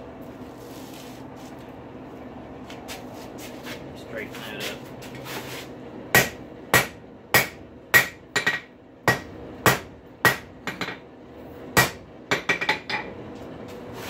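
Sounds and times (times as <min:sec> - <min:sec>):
hammer striking metal on anvil: 0:06.2 - 0:11.0, 0:11.8 - 0:13.1.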